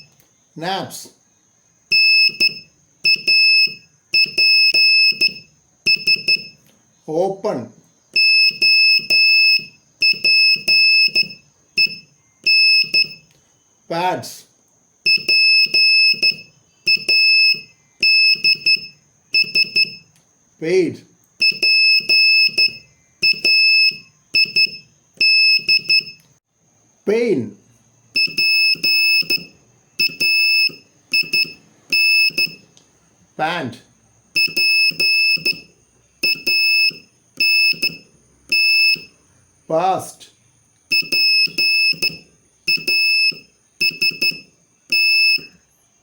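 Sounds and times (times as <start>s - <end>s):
high-pitched morse code beeps: 1.9s - 6.6s, 8.1s - 13.3s, 15.1s - 20.1s, 21.4s - 26.2s, 28.2s - 32.6s, 34.4s - 39.2s, 40.9s - 45.6s.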